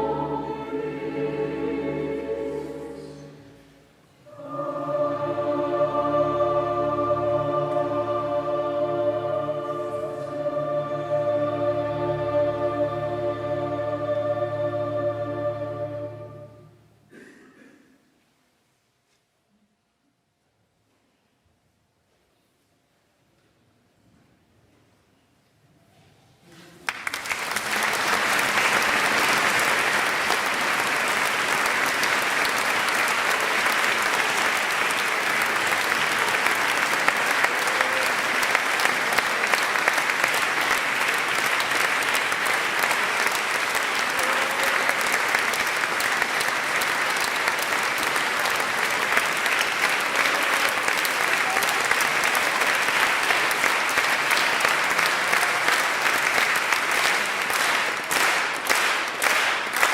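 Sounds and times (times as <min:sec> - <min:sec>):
audience applause: 0:00.0 - 0:00.2, 0:26.8 - 0:59.9.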